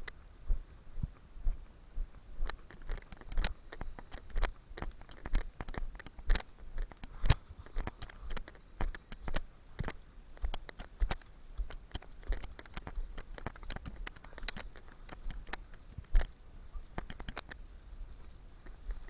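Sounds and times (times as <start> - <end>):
footsteps crunching on rough ground: 0.0 - 19.0.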